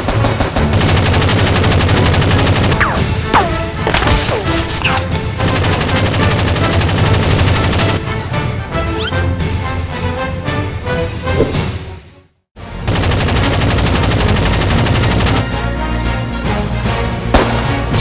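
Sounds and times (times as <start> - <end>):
automatic gunfire: 0.0 - 8.0, 12.9 - 15.4, 17.4 - 18.0
background music: 0.0 - 18.0.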